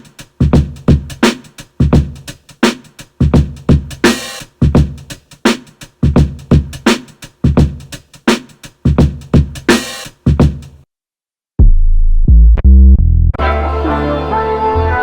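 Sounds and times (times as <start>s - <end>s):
boom bap drum loop: 0.0s - 10.8s.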